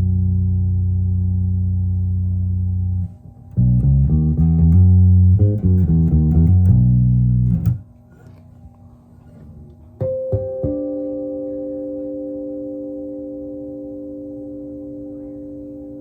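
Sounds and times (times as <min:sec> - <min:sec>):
electric bass plucked notes: 0:00.0 - 0:07.9.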